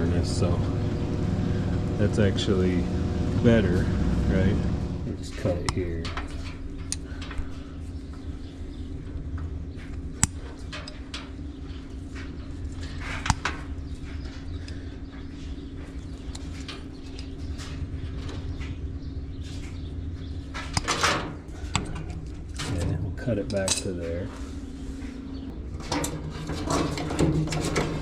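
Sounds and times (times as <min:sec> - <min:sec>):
steady hum: 0:00.0 - 0:28.0
tools clattering: 0:25.8 - 0:28.0.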